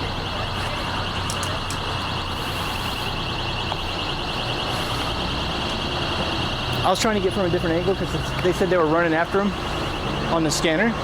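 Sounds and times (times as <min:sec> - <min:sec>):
pulsing electronic alarm: 0:00.0 - 0:11.0.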